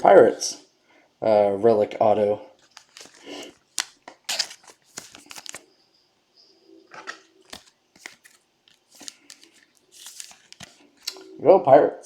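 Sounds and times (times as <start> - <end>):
cards and packaging rustling: 2.6 - 5.7, 6.9 - 11.4.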